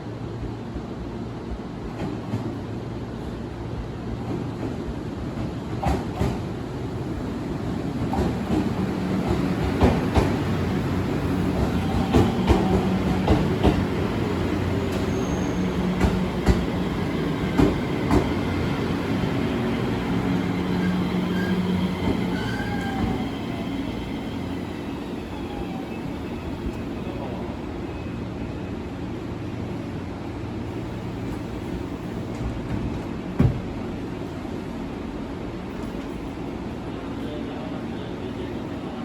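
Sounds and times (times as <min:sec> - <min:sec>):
train hum: 0:00.0 - 0:39.0
faint wheel squeal: 0:14.8 - 0:15.9.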